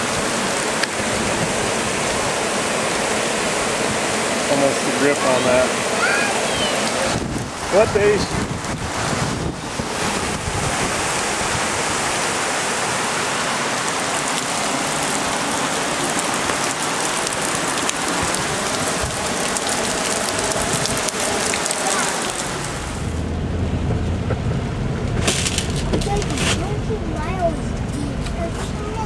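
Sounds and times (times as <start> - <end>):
floodwater rushing: 0.0 - 23.3
low rumble: 7.1 - 12.4, 18.1 - 29.0.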